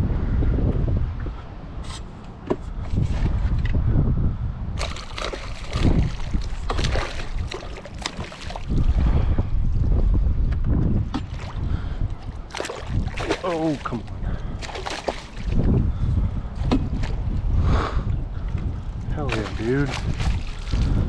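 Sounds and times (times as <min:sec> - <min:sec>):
wind buffeting microphone: 0:00.0 - 0:21.0
water sloshing and splashing: 0:02.1 - 0:03.7, 0:04.7 - 0:10.0, 0:10.9 - 0:17.5, 0:18.3 - 0:21.0.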